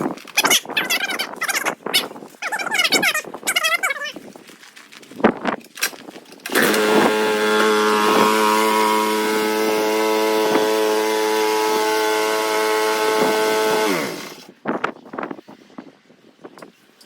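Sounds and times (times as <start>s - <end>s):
snowblower engine running: 6.5s - 14.5s.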